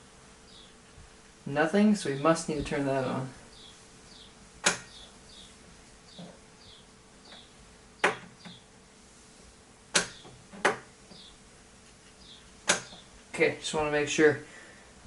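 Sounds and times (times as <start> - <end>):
low steady hum: 0.0 - 15.0
sharp switch clicks: 4.6 - 5.0, 9.9 - 10.8, 12.7 - 13.0.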